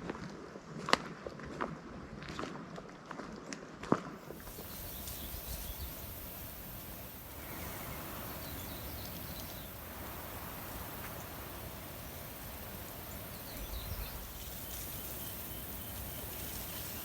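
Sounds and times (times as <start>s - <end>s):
steady background hiss: 4.3s - 17.0s.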